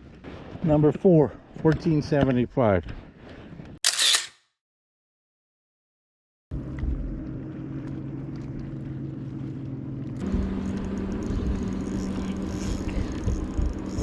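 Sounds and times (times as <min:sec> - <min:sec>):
boat motor humming: 0:06.6 - 0:14.0.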